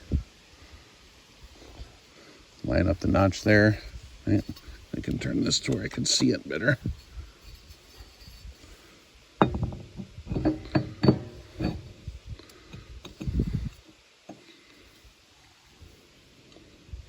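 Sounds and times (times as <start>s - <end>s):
dull thump: 9.4s - 11.9s
metal clinks and knocks: 9.4s - 13.8s.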